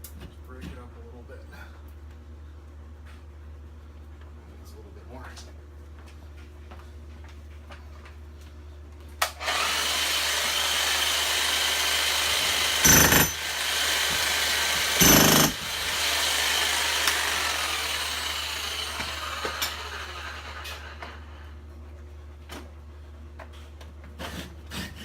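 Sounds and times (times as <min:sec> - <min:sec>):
demolition hammer hammering brick: 0:12.2 - 0:17.3.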